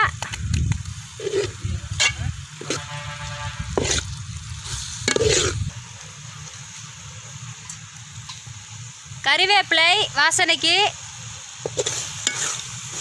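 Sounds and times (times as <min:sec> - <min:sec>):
paste sizzling in hot oil: 0:00.0 - 0:13.0
ladle scraping a pan: 0:01.1 - 0:03.0, 0:03.6 - 0:05.7, 0:11.6 - 0:13.0.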